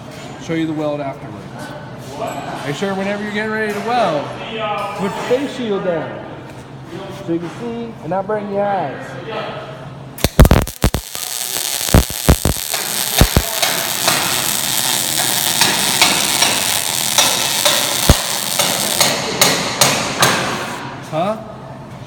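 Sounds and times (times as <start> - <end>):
welding crackling sizzle: 10.2 - 19.8
welding arc pops: 10.2 - 20.6.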